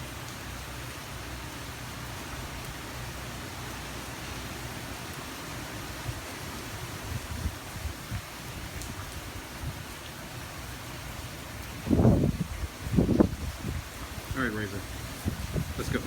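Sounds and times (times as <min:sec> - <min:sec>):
heavy rain and wind: 0:00.0 - 0:16.0
wind buffeting microphone: 0:06.0 - 0:10.0, 0:11.6 - 0:16.0.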